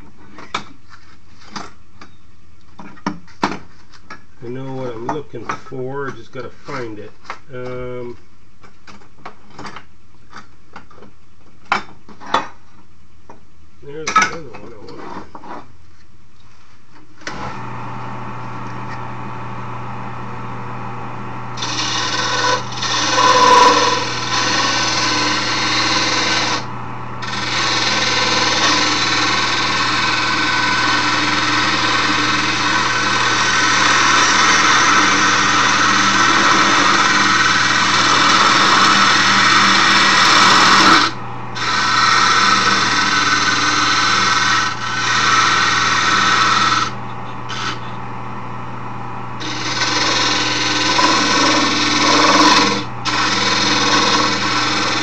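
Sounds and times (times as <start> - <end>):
lathe motor humming: 17.3 - 48.0, 49.4 - 55.0
tool rasping on spinning wood: 21.6 - 47.8, 49.4 - 55.0.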